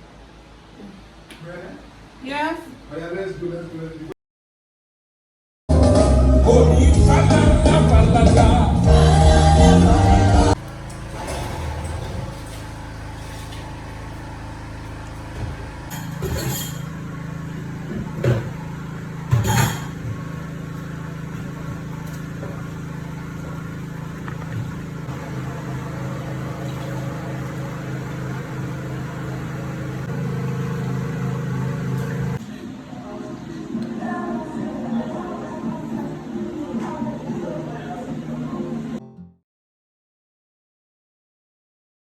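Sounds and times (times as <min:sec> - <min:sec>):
low mechanical hum: 0:07.1 - 0:34.1.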